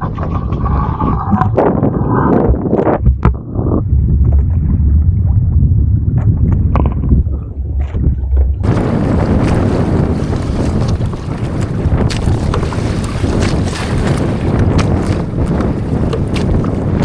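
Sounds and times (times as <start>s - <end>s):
wind rumbling on microphone: 0.0s - 17.0s
water splashing around kayak: 7.9s - 17.0s.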